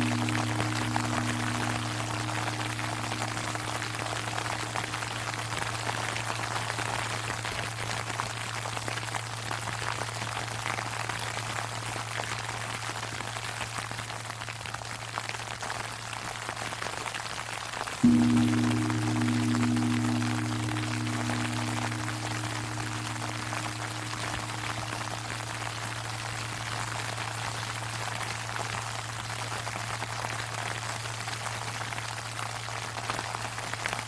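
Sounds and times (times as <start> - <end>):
temple bell hum: 0.0 - 6.9, 18.0 - 31.1.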